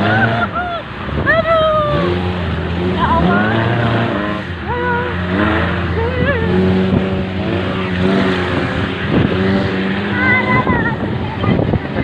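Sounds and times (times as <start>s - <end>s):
people calling out: 0.0s - 6.9s
off-road vehicle engine running: 0.0s - 12.0s.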